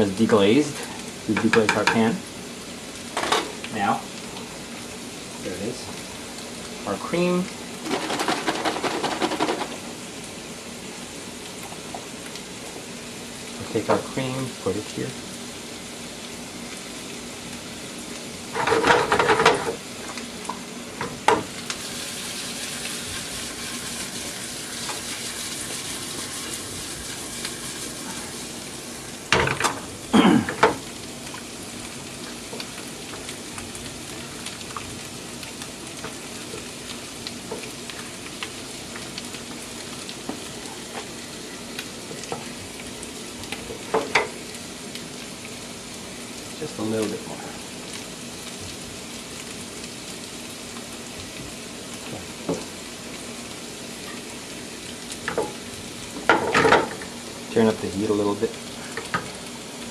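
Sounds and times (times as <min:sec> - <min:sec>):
sauce sizzling in a pan: 0:00.0 - 0:59.9
utensil clattering in a pan: 0:03.2 - 0:03.6, 0:07.8 - 0:09.8, 0:18.6 - 0:19.8.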